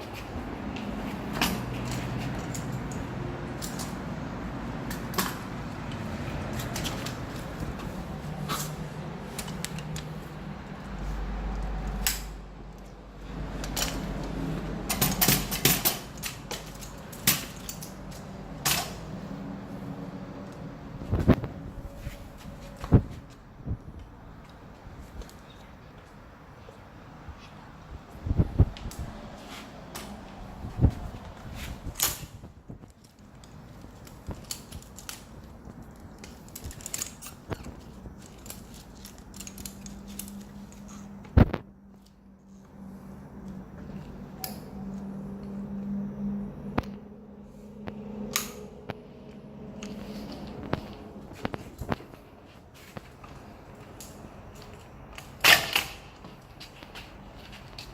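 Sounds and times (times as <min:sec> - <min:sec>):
scooter metallic clicks and clanks: 0:00.1 - 0:04.1, 0:04.8 - 0:10.2, 0:11.5 - 0:12.9, 0:13.5 - 0:19.1, 0:31.8 - 0:42.2, 0:52.8 - 0:57.9.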